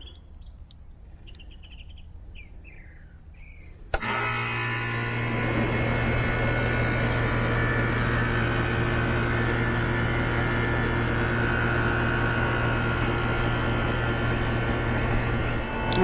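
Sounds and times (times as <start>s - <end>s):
fan noise: 0.0s - 16.0s
compressor motor humming: 3.9s - 16.0s.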